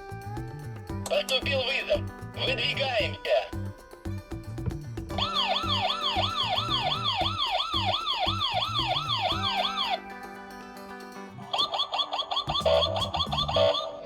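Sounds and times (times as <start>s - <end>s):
fast wailing siren: 5.2s - 10.1s, 11.5s - 14.0s.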